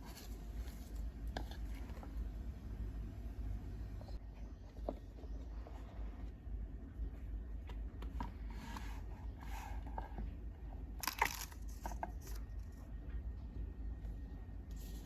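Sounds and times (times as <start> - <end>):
crinkling and rustling: 0.0 - 2.3, 7.0 - 13.2.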